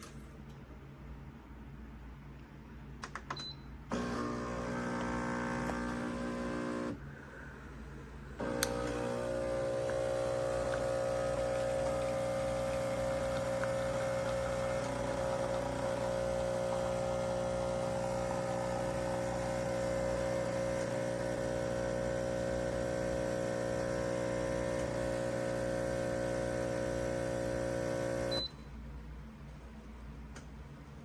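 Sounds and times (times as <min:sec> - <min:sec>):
espresso machine pump humming: 0:03.9 - 0:07.0, 0:08.4 - 0:28.4.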